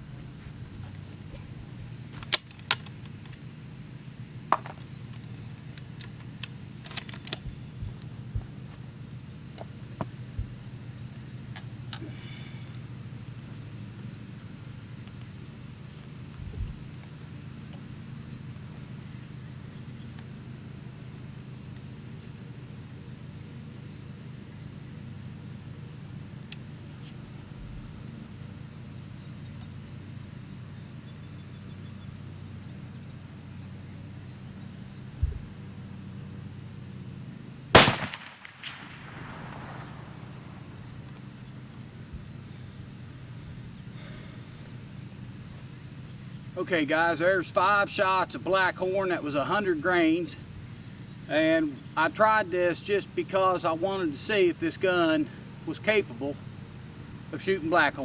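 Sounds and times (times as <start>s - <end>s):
steady low hum: 0.0s - 23.4s, 24.2s - 58.0s
rifle shot echoing: 37.7s - 40.8s.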